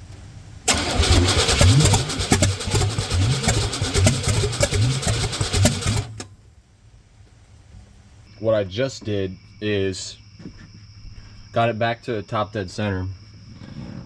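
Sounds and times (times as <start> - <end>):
starter cranking engine: 0.7 - 6.3.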